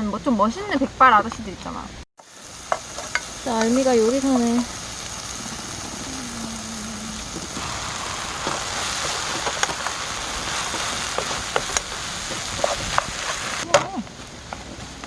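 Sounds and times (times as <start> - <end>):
food sizzling on grill plate: 2.2 - 13.7
pops and crackles: 2.7 - 15.0.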